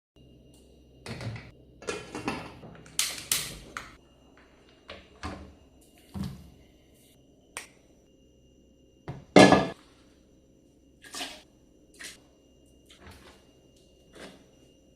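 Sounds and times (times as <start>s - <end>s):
kitchen knocks and clatters: 1.0s - 4.0s, 9.1s - 9.8s.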